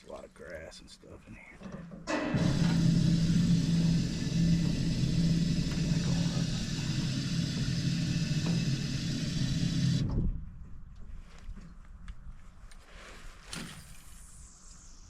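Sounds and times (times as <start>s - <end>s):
propeller wash: 2.1s - 10.1s
electric trolling motor humming: 2.1s - 10.2s.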